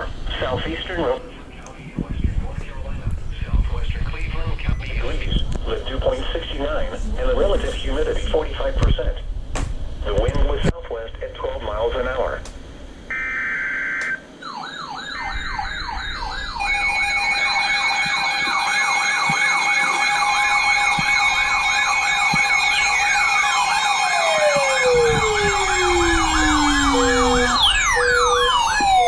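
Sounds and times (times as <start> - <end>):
sirens sweeping up and down: 13.1 - 29.0.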